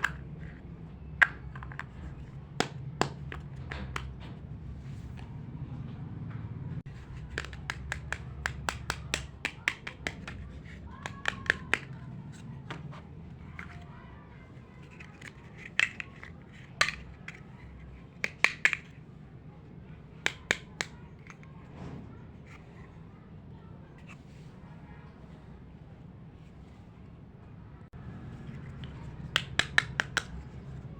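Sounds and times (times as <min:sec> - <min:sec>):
plastic toy pieces clicking: 0:07.0 - 0:12.8, 0:14.8 - 0:17.5, 0:18.2 - 0:18.9, 0:20.3 - 0:21.5, 0:28.8 - 0:30.4.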